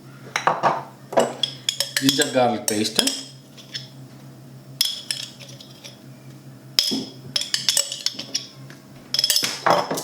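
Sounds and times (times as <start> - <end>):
spoon clinking against a bowl: 1.2 - 3.9, 4.8 - 6.0, 6.8 - 10.0.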